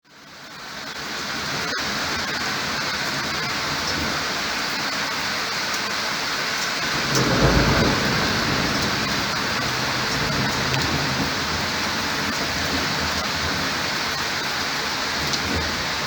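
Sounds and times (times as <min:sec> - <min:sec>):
heavy rain falling: 0:00.2 - 0:16.0
low rumble of thunder: 0:06.8 - 0:16.0.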